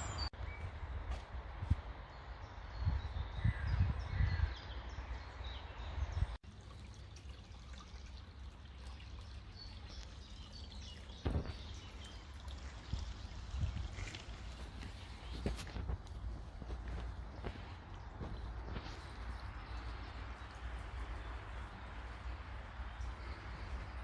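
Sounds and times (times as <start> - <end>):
water trickling and lapping: 6.4 - 24.0
birds chirping: 8.1 - 24.0.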